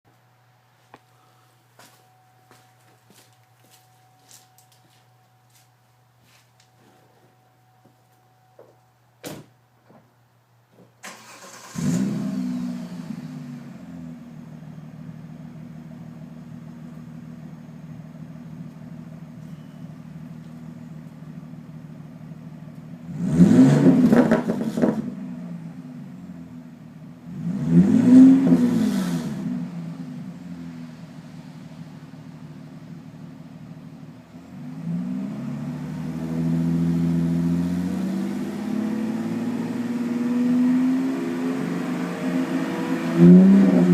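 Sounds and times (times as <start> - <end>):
engine revving: 11.1 - 14.2, 23.1 - 25.3, 27.3 - 30.1, 34.6 - 43.9
unmuffled car engine idling: 12.8 - 23.3, 24.0 - 27.4, 29.4 - 37.5.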